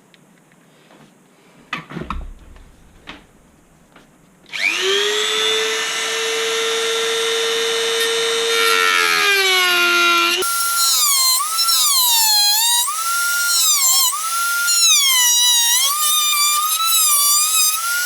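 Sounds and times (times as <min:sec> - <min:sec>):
handling knocks: 0:01.7 - 0:04.2
rotary tool high whine: 0:04.5 - 0:18.0.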